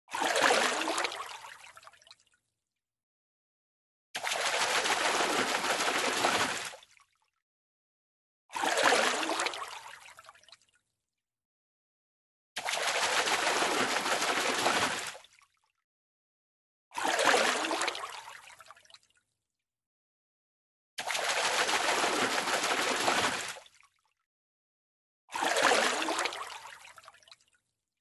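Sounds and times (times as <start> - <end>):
water rushing and splashing: 12.8 - 15.0, 21.1 - 23.4.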